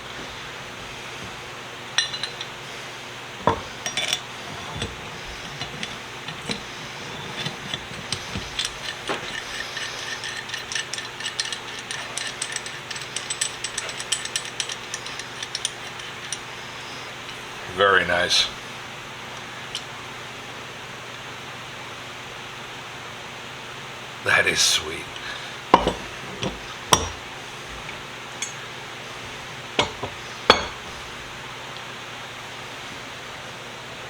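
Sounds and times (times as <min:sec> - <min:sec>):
metal wrench knocks: 0:25.8 - 0:27.2, 0:29.8 - 0:30.9.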